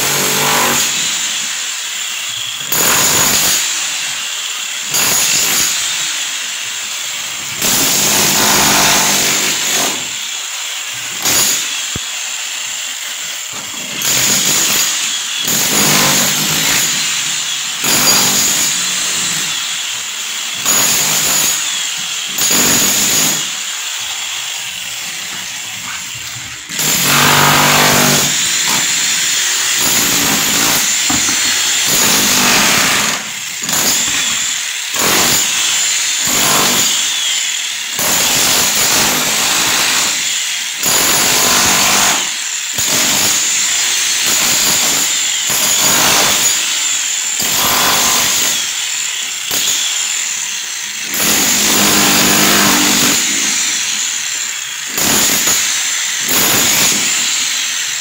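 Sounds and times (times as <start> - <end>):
handheld power tool running: 0.0 - 58.0.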